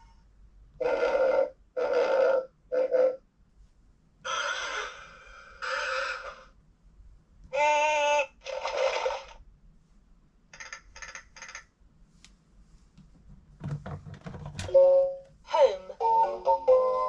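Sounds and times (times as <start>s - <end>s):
clicks and thumps of book pressed: 13.0s - 14.7s.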